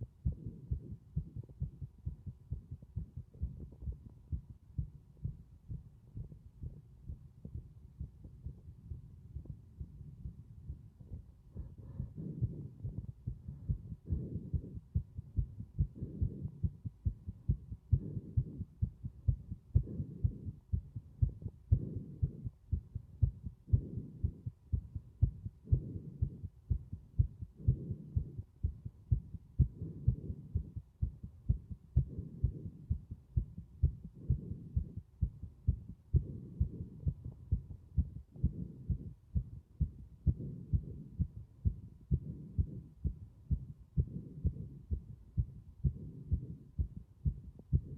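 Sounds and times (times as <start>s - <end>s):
heartbeat thudding: 0.0s - 47.9s
breathing: 11.6s - 12.9s.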